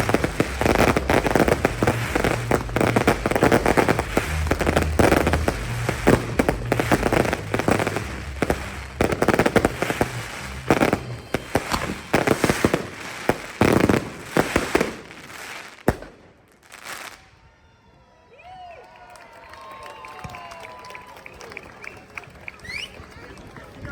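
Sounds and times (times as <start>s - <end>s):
fireworks crackling and banging: 0.0s - 17.3s.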